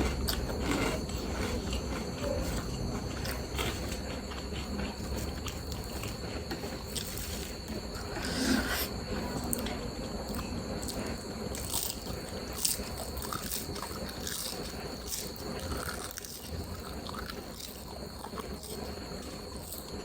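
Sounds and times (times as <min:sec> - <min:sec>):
chewing with crunches: 0:00.0 - 0:20.0.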